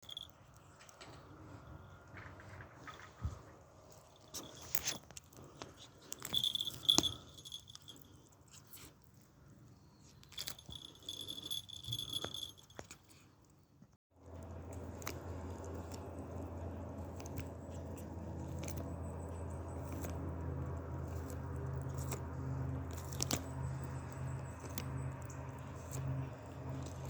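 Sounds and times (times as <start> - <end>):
steady low hum: 14.2 - 27.0
bird tearing at meat: 14.4 - 27.0.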